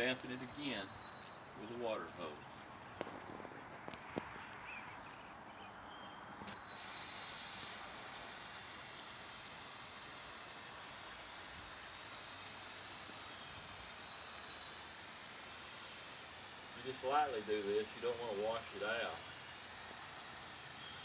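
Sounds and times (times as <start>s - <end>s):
garden hose spraying mist: 6.3s - 21.0s.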